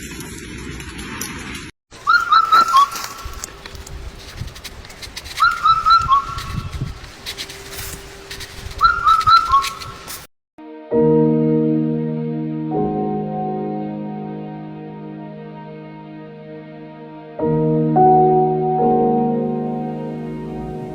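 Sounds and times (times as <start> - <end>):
bird whistling song: 2.0 - 3.5, 5.4 - 6.7, 8.7 - 10.0.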